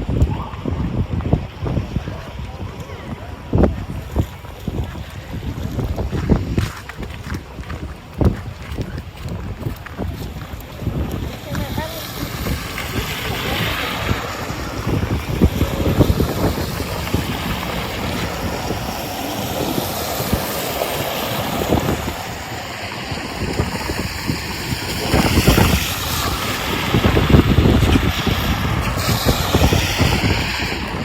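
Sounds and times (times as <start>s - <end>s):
strong wind buffeting microphone: 0.0s - 31.0s.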